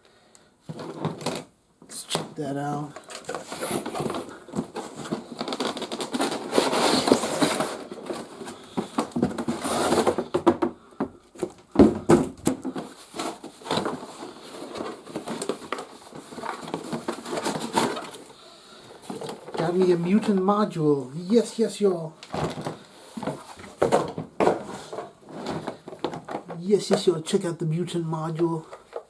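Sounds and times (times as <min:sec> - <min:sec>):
plastic packaging crinkling: 0:02.9 - 0:10.4, 0:12.4 - 0:27.3.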